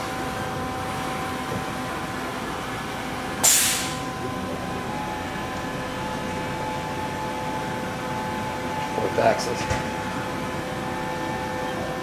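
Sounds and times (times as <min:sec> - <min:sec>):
machining center humming: 0:00.0 - 0:12.0
compressed air hiss: 0:03.4 - 0:04.0.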